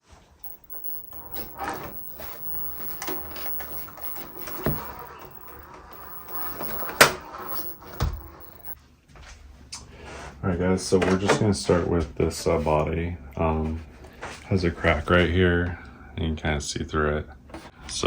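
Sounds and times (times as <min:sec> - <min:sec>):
sharp click: 0:00.4 - 0:08.8.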